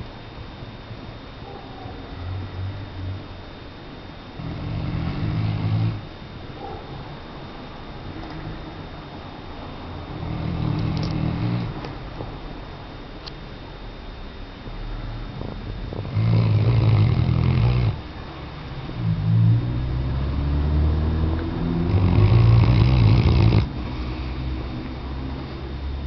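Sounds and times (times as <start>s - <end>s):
dog snoring: 4.4s - 6.0s, 10.1s - 11.8s, 15.8s - 18.0s, 21.2s - 24.4s.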